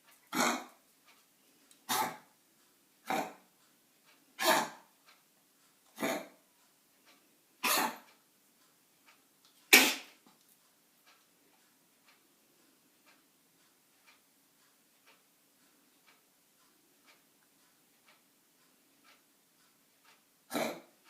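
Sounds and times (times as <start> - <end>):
dog coughing harshly: 0.3 - 0.8, 1.9 - 2.2, 3.1 - 3.4, 4.4 - 4.9, 6.0 - 6.4, 7.6 - 8.1, 9.7 - 10.2, 20.5 - 20.9.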